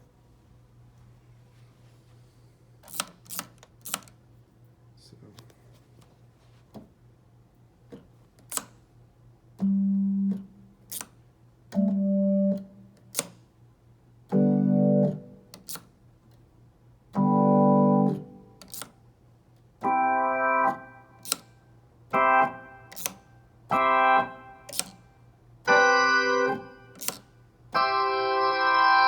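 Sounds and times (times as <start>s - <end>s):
distorted organ chords: 11.8s - 12.8s, 14.3s - 15.4s, 17.2s - 18.4s, 19.8s - 21.2s, 22.1s - 23.1s, 23.7s - 24.8s, 25.7s - 27.0s, 27.8s - 29.0s
sharp clicks: 21.2s - 21.5s, 24.7s - 25.0s, 26.5s - 27.2s.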